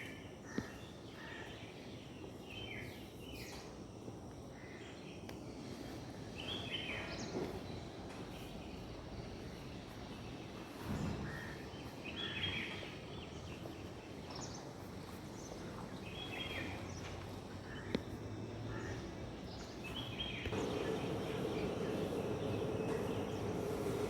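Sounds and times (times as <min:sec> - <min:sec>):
outdoor background hiss: 0:00.0 - 0:24.0
birds calling: 0:06.2 - 0:24.0.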